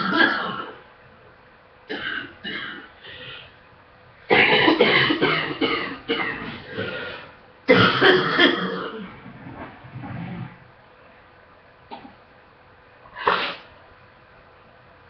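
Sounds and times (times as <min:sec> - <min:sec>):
woman coughing: 0:00.0 - 0:00.8, 0:01.9 - 0:02.9, 0:04.3 - 0:06.9, 0:07.7 - 0:09.1.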